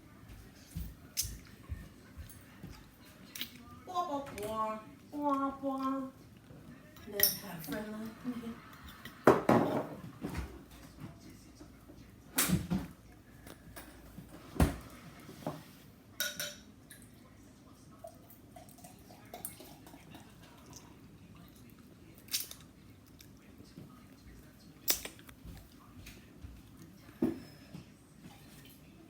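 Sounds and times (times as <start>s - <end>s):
fork clinking on a plate: 16.2s - 16.6s.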